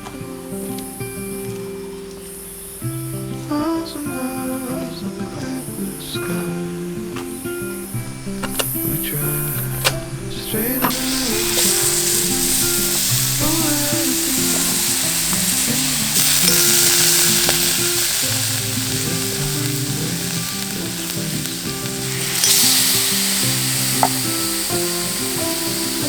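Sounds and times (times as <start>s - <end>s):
meat sizzling on a grill: 0.0s - 26.0s
background music: 0.1s - 26.0s.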